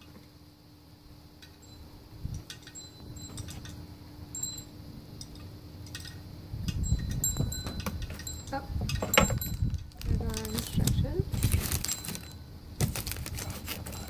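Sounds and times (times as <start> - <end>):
high-pitched tinkling pings: 1.6 - 2.0, 2.7 - 3.7, 4.3 - 4.8, 11.8 - 12.6.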